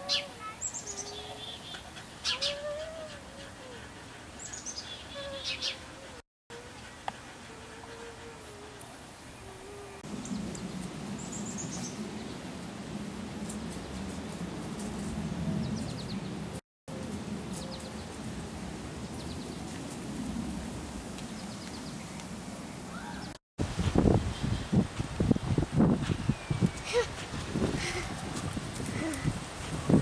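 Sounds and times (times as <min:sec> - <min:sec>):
small birds chirping: 0:00.1 - 0:02.9, 0:04.4 - 0:05.9, 0:26.2 - 0:27.1
low outdoor rumble: 0:08.8 - 0:23.3.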